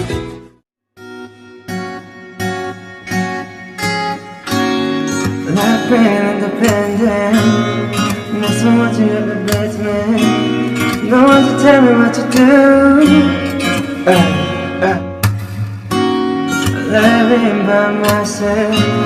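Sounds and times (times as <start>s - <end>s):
plucked guitar notes: 1.0s - 19.0s
pop song backing: 2.4s - 19.0s
person singing: 5.4s - 15.2s, 16.6s - 19.0s.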